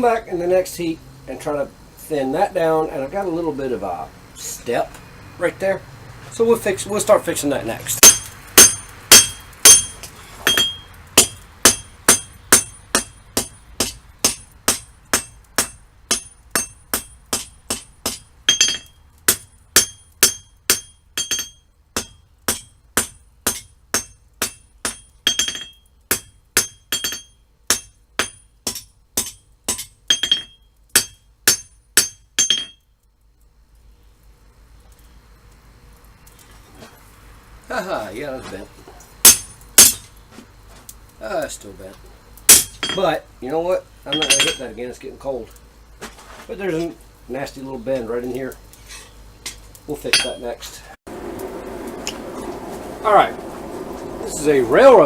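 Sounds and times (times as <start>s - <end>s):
hammer striking steel on anvil: 8.0s - 32.8s, 39.2s - 40.1s, 42.5s - 43.1s, 44.1s - 44.8s, 50.1s - 50.6s.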